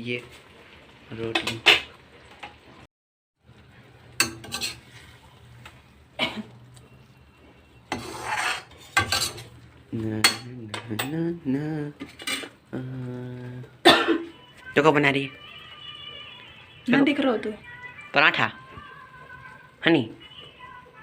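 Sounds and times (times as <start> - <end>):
metal utensils clinking and scraping: 4.2 - 5.2, 7.9 - 9.6, 12.0 - 12.6.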